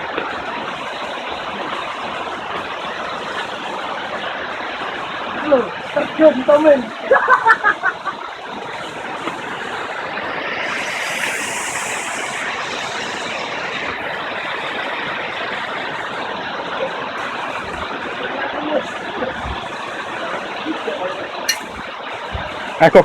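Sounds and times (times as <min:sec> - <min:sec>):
brighter water hiss: 0:08.4 - 0:15.0, 0:21.5 - 0:21.9.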